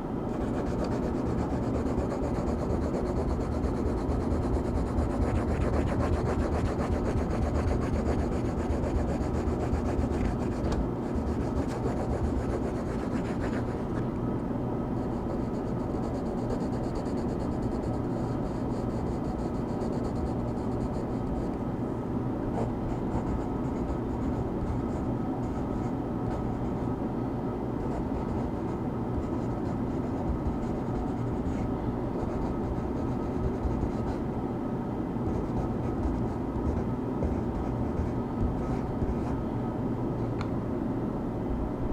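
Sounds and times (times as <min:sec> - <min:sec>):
white noise: 0:00.0 - 0:41.9
coloring strokes rubbing on paper: 0:00.4 - 0:14.0, 0:15.1 - 0:21.3, 0:32.2 - 0:34.2.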